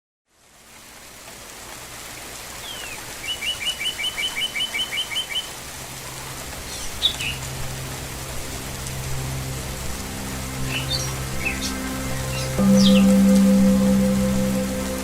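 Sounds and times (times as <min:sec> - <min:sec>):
steady rain: 0:00.3 - 0:15.0
bird chirping: 0:10.7 - 0:15.0.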